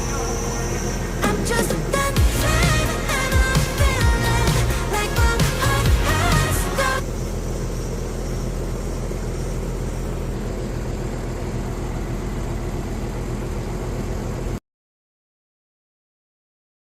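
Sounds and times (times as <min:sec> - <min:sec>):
background music: 0:00.0 - 0:07.0
air conditioner humming: 0:00.0 - 0:14.6.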